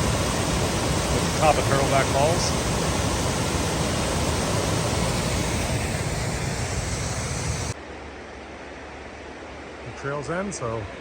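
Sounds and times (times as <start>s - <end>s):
waterfall roaring: 0.0s - 7.8s
faint steady hiss: 0.0s - 11.0s.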